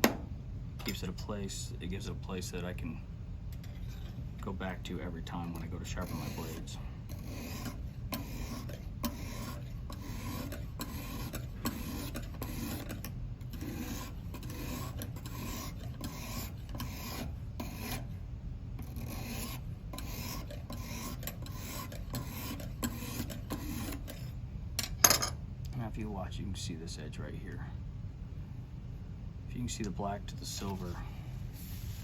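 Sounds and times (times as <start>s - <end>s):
hone scraping knife edge: 5.4s - 18.1s, 18.8s - 24.3s.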